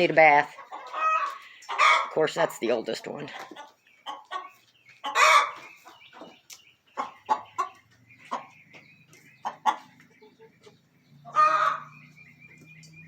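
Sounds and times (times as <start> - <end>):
hens clucking: 0.0 - 13.0
hen squawk: 11.3 - 11.9.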